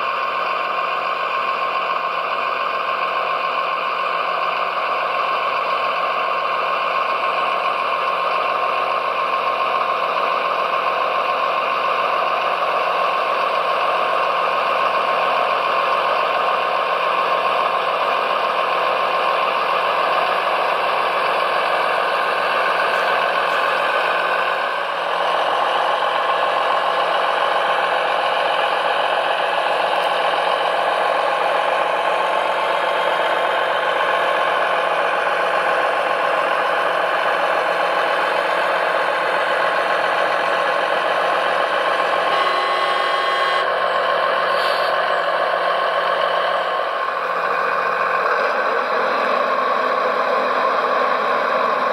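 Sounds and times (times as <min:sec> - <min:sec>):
toy machines mechanical whine: 0:42.1 - 0:45.2.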